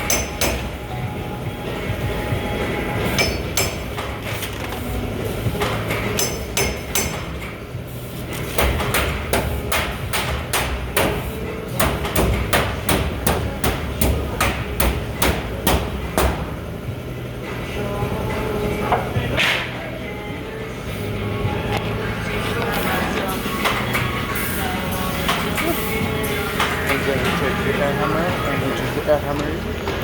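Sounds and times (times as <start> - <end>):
air hammer striking sheet metal: 0.0 - 0.8, 3.0 - 4.4, 5.4 - 7.5, 8.4 - 16.6, 19.3 - 19.8
steady low hum: 0.0 - 30.0.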